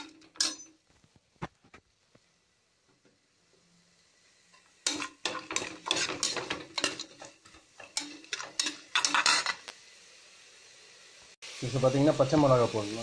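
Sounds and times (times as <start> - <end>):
spoon stirring and scraping pan: 0.0 - 0.8, 4.4 - 9.8
vegetables sauteing: 0.0 - 13.0.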